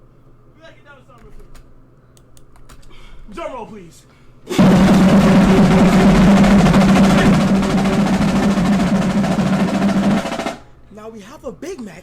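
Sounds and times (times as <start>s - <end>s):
drum roll: 4.5s - 10.7s.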